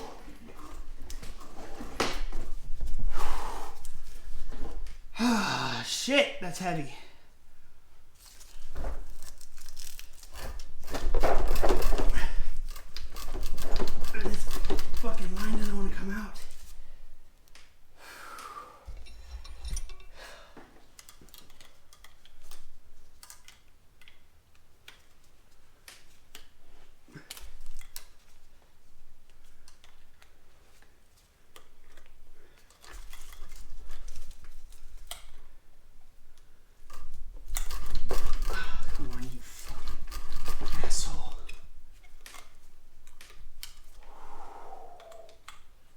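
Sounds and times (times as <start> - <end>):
metal tools clattering: 18.9 - 20.3.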